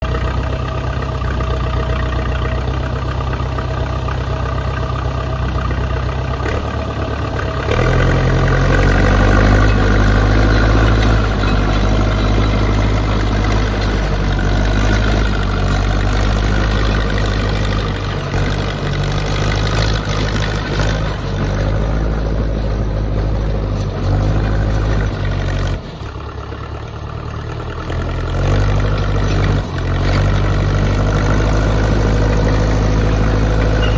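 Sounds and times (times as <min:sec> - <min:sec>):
bulldozer diesel engine running: 0:00.0 - 0:33.9.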